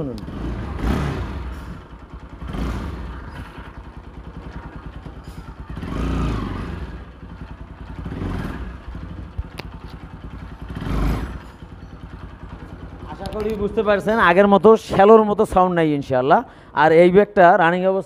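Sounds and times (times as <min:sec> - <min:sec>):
motorcycle engine revving: 0:00.0 - 0:15.8
man talking: 0:13.0 - 0:18.0.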